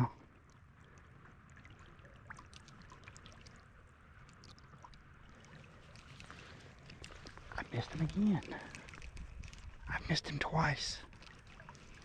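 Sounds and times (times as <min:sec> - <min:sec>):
creek running faintly: 0:00.0 - 0:12.0
water ticks and trickles: 0:00.0 - 0:12.0.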